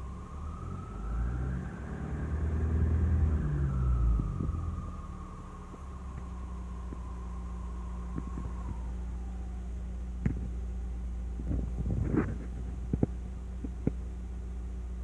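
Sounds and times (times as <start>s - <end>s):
steady low hum: 3.0s - 15.0s.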